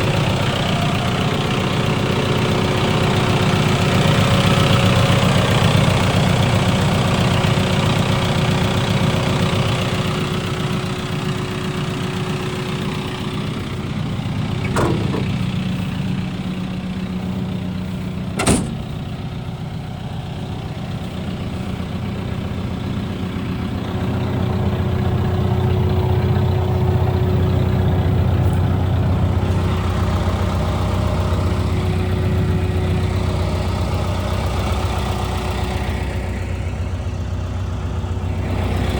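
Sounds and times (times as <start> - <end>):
diesel engine running: 0.0 - 38.9
sharp knock: 18.4 - 19.0.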